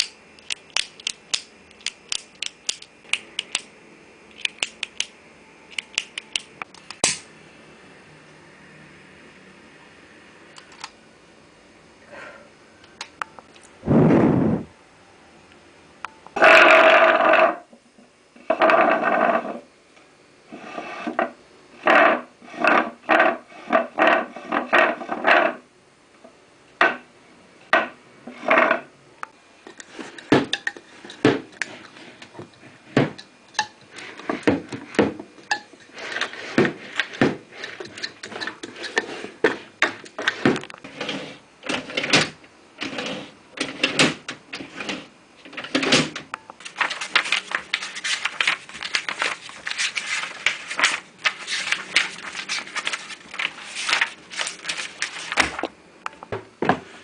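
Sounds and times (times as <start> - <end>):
objects tapping and knocking: 29.7 - 40.8.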